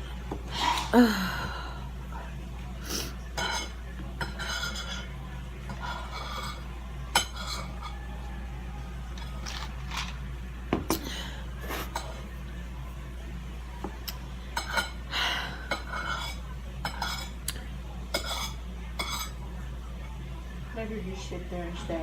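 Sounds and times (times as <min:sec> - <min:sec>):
steady low hum: 0:00.0 - 0:22.0
cutlery clinking on a plate: 0:03.4 - 0:05.1, 0:05.7 - 0:08.0, 0:14.6 - 0:15.0, 0:15.7 - 0:17.4, 0:18.1 - 0:19.4.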